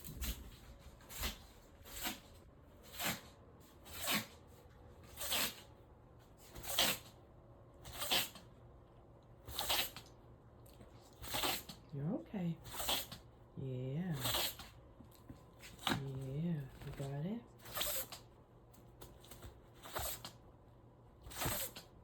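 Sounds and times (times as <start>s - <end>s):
pet sneezing: 1.1s - 4.4s, 5.1s - 5.6s, 6.5s - 7.2s, 7.8s - 8.5s, 9.4s - 10.1s, 11.2s - 11.8s, 12.6s - 13.2s, 14.2s - 14.8s, 17.6s - 18.2s, 19.8s - 20.4s, 21.2s - 21.9s.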